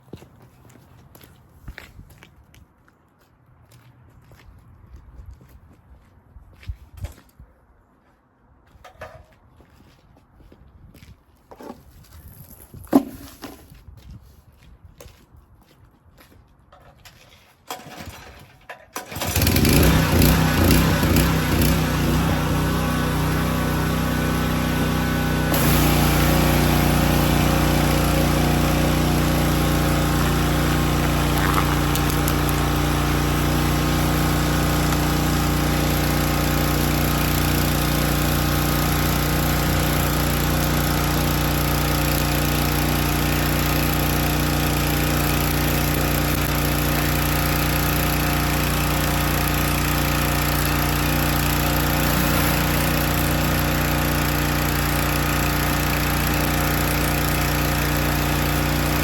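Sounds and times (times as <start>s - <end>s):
pressure washer engine running: 19.0s - 59.0s
water spraying onto concrete: 19.8s - 59.0s.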